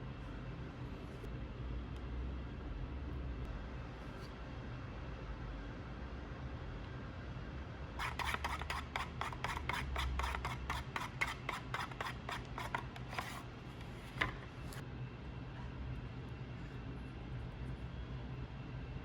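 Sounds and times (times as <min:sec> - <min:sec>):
hand tool rubbing on workpiece: 0:08.0 - 0:14.2.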